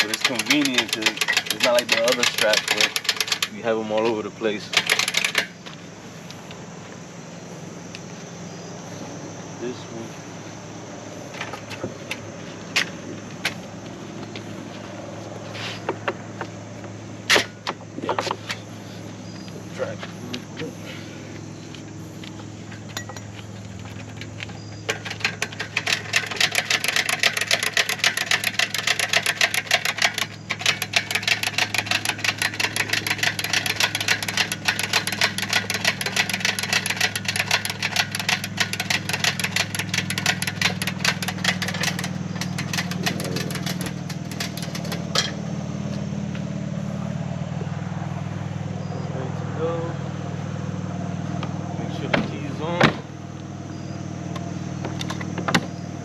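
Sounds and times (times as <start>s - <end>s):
fast dense clicking rattle: 0.0s - 6.6s, 23.0s - 45.4s
engine idling: 0.0s - 56.0s.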